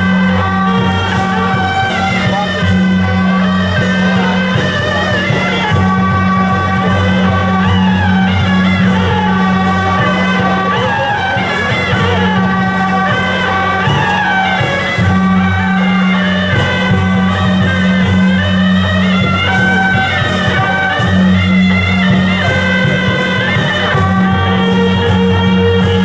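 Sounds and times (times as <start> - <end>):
loud procession music: 0.0 - 26.0.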